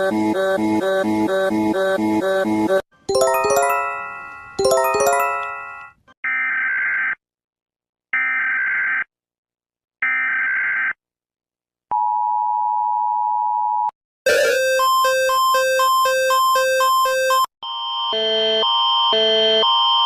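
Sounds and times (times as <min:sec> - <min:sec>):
struck chime chords: 0:03.1 - 0:05.9.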